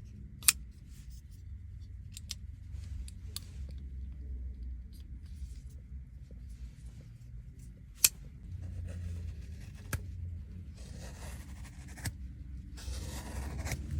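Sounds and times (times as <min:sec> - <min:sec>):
low steady hum: 0:00.0 - 0:13.9.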